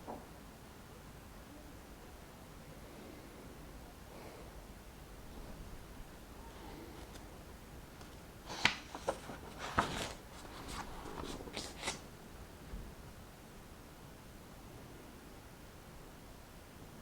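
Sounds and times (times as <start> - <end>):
book page turning: 8.0 - 12.1.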